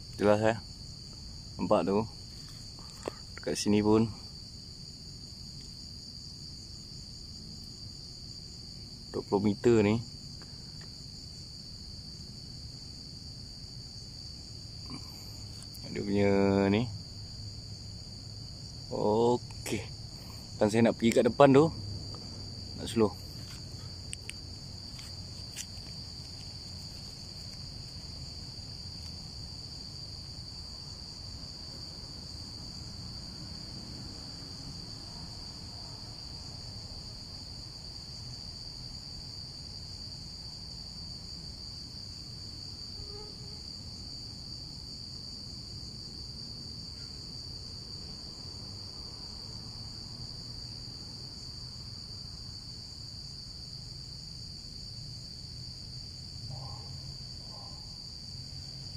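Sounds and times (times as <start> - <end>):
low outdoor hum: 0.0 - 38.8
crickets trilling: 0.0 - 58.9.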